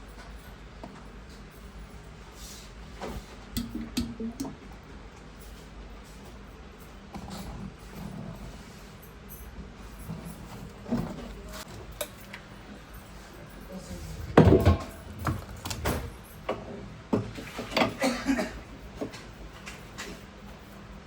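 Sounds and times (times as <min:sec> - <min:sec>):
low steady hum: 0:00.0 - 0:19.8
objects knocking and clattering: 0:14.2 - 0:18.1.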